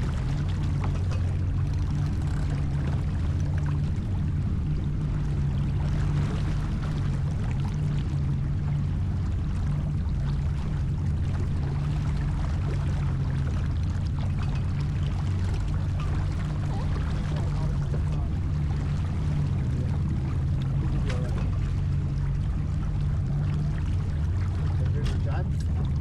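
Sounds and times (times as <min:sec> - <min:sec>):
low motor hum: 0:00.0 - 0:26.0
water splashing along boat hull: 0:00.0 - 0:26.0.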